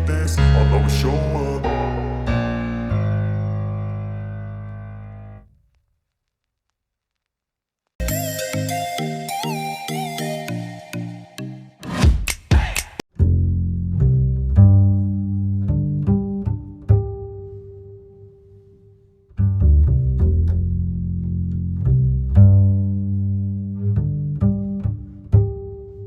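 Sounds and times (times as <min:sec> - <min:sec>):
low string-like notes: 0:00.0 - 0:05.4, 0:13.2 - 0:17.4, 0:19.3 - 0:26.0.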